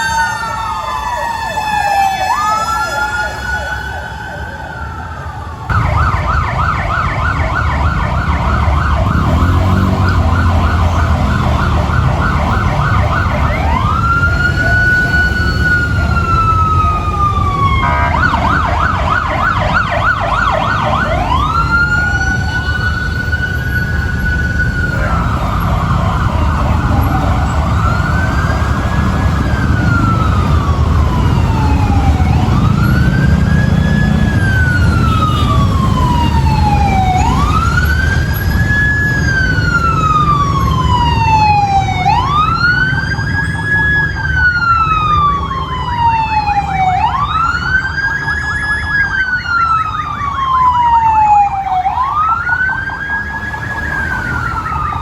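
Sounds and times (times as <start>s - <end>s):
engine and road rumble: 0.0s - 55.0s
fire truck siren wailing: 0.0s - 55.0s
higher siren: 0.0s - 55.0s.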